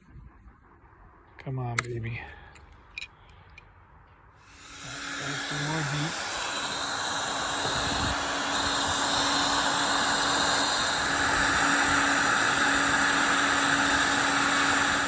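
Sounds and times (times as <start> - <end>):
heat gun fan hissing: 4.4 - 15.0.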